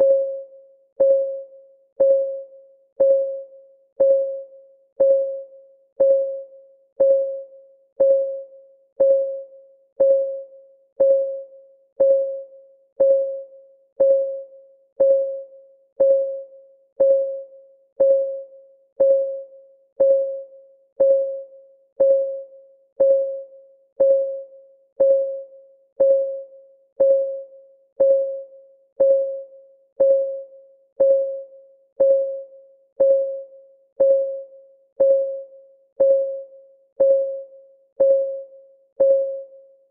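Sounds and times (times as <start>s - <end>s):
clock ticking with ringing tone: 0.0s - 39.9s.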